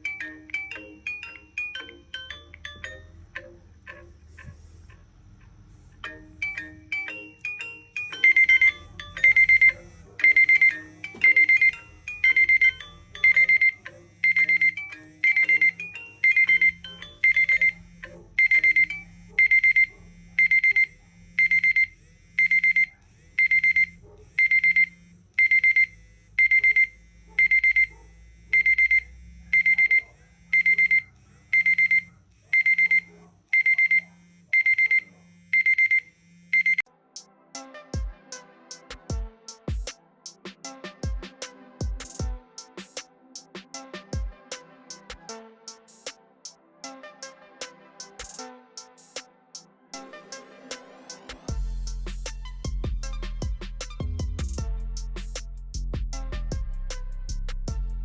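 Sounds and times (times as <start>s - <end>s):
faint electronic tune: 0.0s - 58.0s
alarm beeping: 6.0s - 36.9s.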